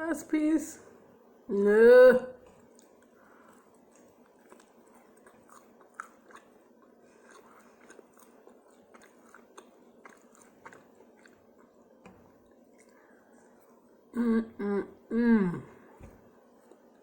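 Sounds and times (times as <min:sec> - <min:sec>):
chewing pizza with mouth clicks: 0:02.4 - 0:13.9.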